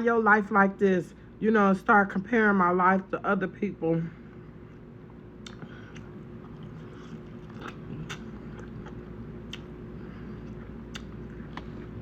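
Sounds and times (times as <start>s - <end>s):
person chewing food: 4.6s - 12.0s.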